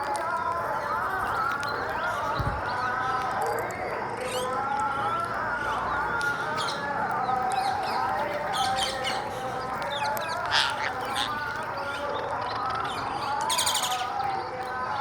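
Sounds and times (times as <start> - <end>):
flock of parrots chattering: 2.0 - 5.2, 6.5 - 14.2.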